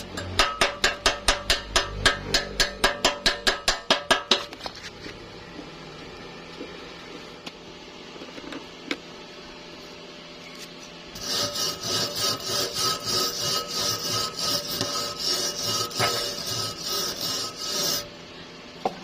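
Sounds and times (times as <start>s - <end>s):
hand tool scraping back and forth: 11.2s - 18.2s.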